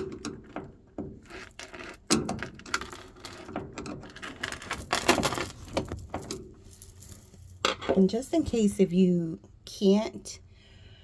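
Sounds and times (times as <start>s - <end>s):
screwdriver clicking and scraping metal: 0.0s - 6.4s.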